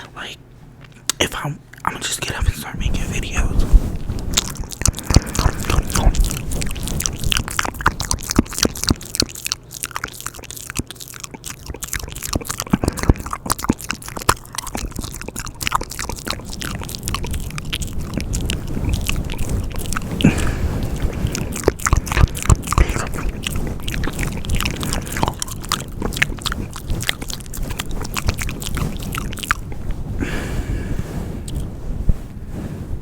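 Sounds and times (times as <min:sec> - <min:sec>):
wet mouth clicks and smacks: 0:04.2 - 0:29.7.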